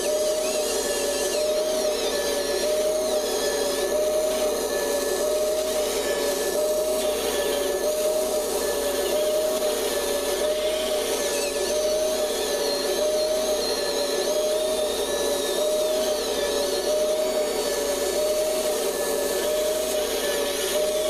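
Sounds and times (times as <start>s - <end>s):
electric motors whining: 0.0s - 21.0s
high whines drifting in pitch: 0.0s - 21.0s.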